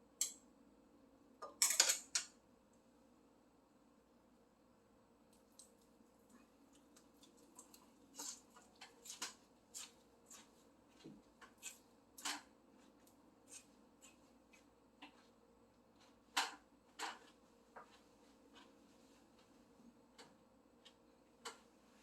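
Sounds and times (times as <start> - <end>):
person chewing: 5.4 - 12.3.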